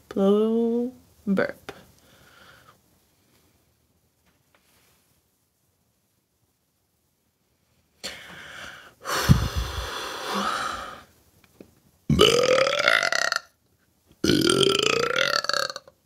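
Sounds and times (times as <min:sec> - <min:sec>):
person burping loudly: 0:12.1 - 0:13.6, 0:14.2 - 0:16.0.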